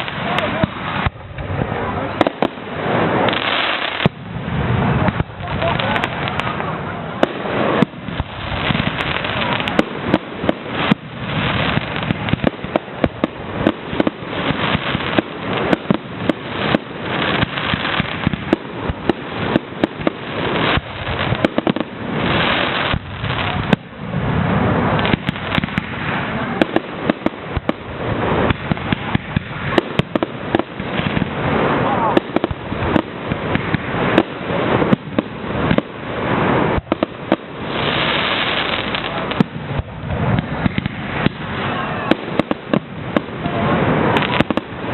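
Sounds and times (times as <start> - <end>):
continuous rushing crackle: 0.0 - 44.9
fireworks bangs and pops: 0.0 - 44.9.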